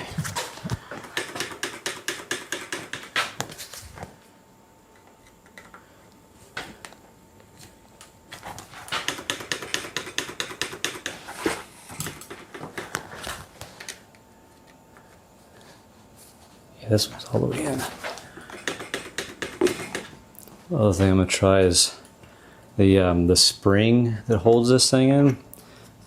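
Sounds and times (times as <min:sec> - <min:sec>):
rapid ratcheting clicks: 0:01.1 - 0:03.2, 0:09.0 - 0:11.2, 0:18.5 - 0:20.1.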